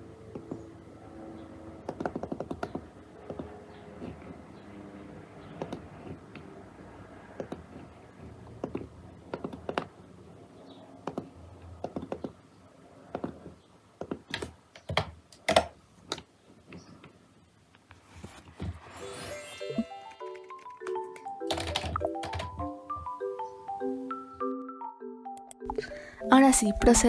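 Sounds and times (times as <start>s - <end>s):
keyboard typing: 1.8s - 4.5s, 5.4s - 6.6s, 7.3s - 10.0s, 13.1s - 16.3s, 19.4s - 23.2s, 25.3s - 27.0s.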